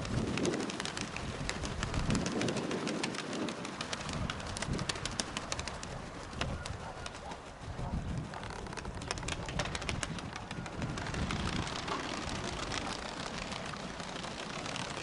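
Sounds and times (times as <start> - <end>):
sharp clicks and crackles: 8.2 - 15.0.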